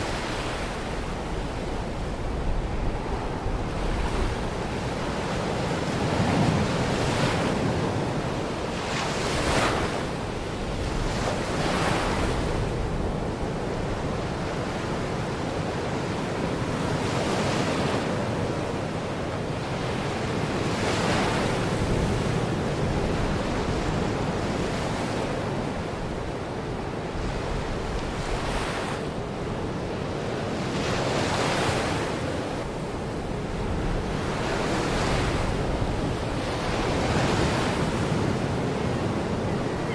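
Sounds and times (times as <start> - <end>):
wind on microphone: 0.0 - 15.3, 27.0 - 39.9.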